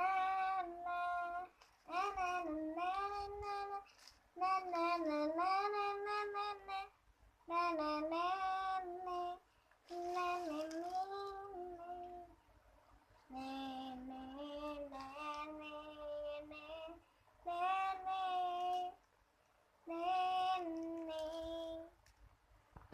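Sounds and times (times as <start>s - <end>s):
child singing unaccompanied: 0.0s - 12.4s, 13.3s - 19.0s, 19.8s - 22.0s.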